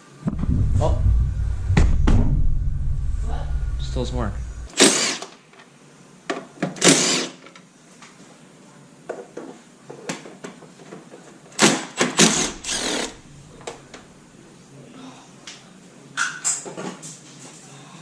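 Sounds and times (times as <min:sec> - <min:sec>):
cordless drill running: 0:12.3 - 0:13.1.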